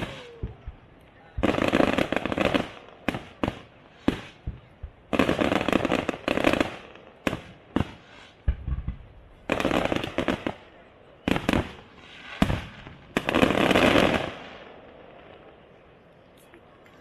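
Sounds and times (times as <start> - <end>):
deep firework thuds: 0.0 - 10.5
firework bangs: 0.0 - 15.5
firework crackling: 0.0 - 15.8.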